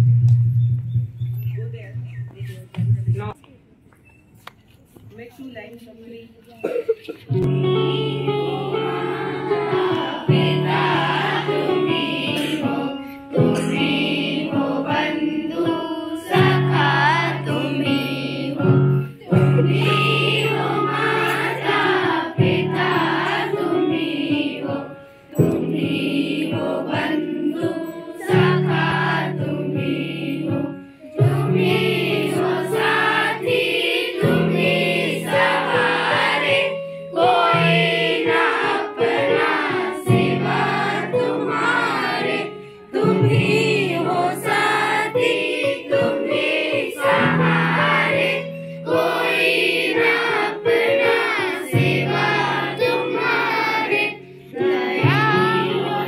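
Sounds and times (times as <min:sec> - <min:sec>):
held chords: 0:07.4 - 0:50.9
children singing in chorus: 0:07.5 - 0:56.0.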